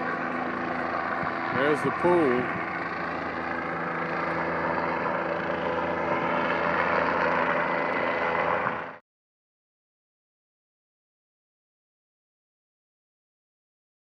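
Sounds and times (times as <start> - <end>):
steady engine drone: 0.0 - 9.0.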